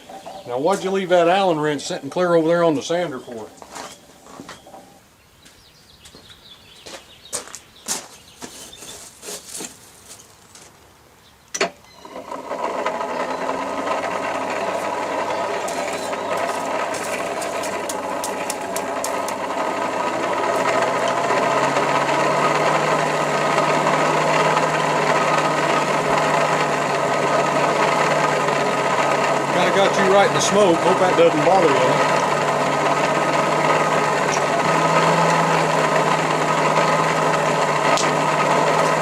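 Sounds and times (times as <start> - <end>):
electric motor droning: 12.0 - 39.0.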